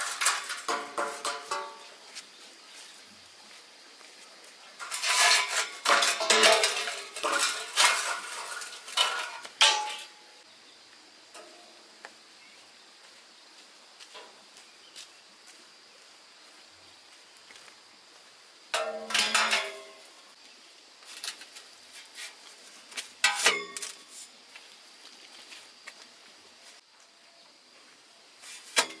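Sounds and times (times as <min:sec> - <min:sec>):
metal objects clattering: 0:00.0 - 0:02.0, 0:04.8 - 0:10.3, 0:18.8 - 0:20.2, 0:23.2 - 0:24.1.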